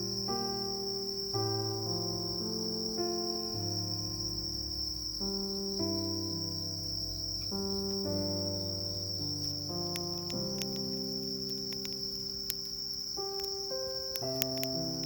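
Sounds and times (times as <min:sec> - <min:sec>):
crickets chirring: 0:00.0 - 0:15.0
soft music of sustained chords: 0:00.0 - 0:15.0
sharp clicks: 0:09.2 - 0:15.0.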